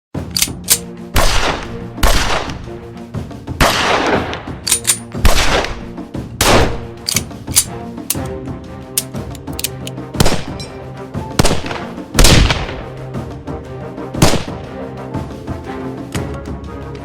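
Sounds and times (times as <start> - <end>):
background music: 0.2 - 17.0
metallic weapon handling clicks: 0.3 - 0.9, 4.6 - 5.1, 7.0 - 8.3, 8.9 - 10.0
echoing gunshots: 1.2 - 2.6, 3.6 - 4.5, 5.2 - 7.0, 10.2 - 10.6, 11.4 - 12.9, 14.2 - 14.6.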